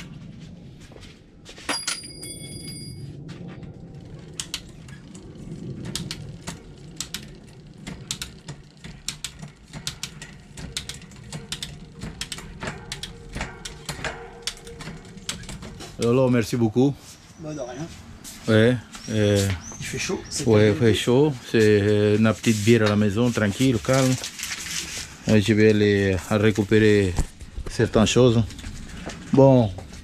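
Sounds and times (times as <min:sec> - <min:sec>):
ringing metal clink: 0:01.7 - 0:03.1
small metallic clicks: 0:04.3 - 0:15.8.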